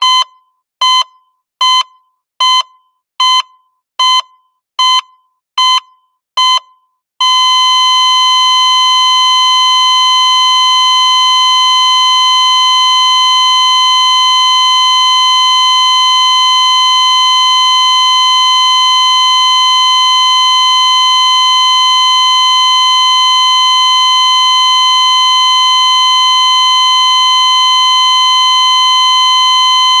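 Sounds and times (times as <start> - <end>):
heart rate monitor beeping: 0.0 - 30.0
flatline tone: 7.2 - 30.0.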